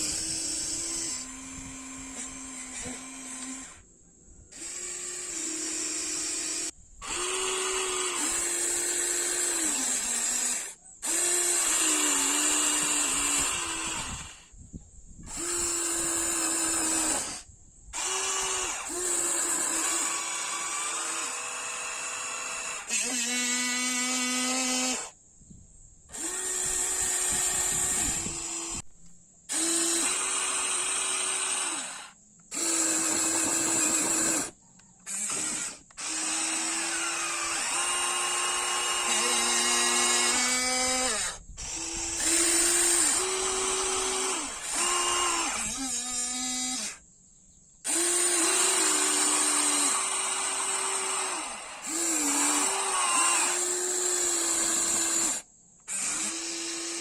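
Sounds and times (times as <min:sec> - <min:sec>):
small electric motors whining: 0:00.0 - 0:03.8, 0:04.5 - 0:14.6, 0:15.2 - 0:25.2, 0:26.1 - 0:47.1, 0:47.8 - 0:57.0.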